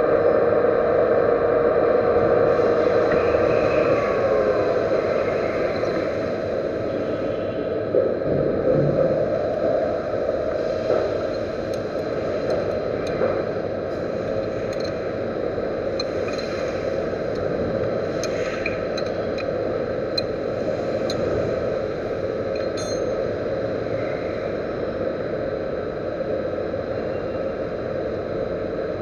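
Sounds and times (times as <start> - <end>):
sharp metallic clinks: 22.6 - 23.2.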